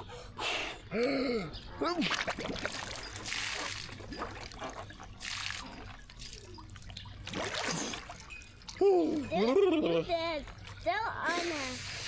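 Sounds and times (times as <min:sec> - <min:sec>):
water sloshing and dripping: 0:01.9 - 0:09.6, 0:10.4 - 0:11.2
water splashes: 0:02.0 - 0:09.3.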